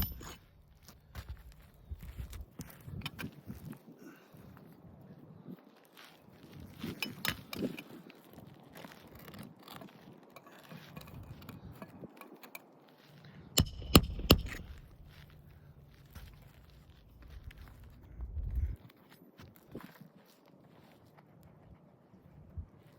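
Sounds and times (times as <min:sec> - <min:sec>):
scraping and clicking on shingles: 0:06.5 - 0:15.0
sharp knocks: 0:13.6 - 0:14.6.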